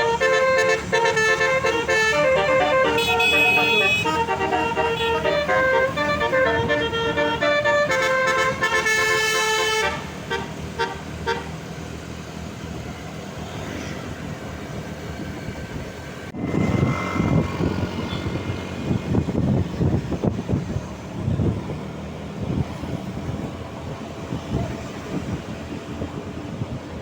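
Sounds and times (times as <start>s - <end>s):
musical air horn melody: 0.0s - 11.5s
engine and traffic noise: 0.0s - 27.0s
loud rumbling noise: 14.9s - 27.0s.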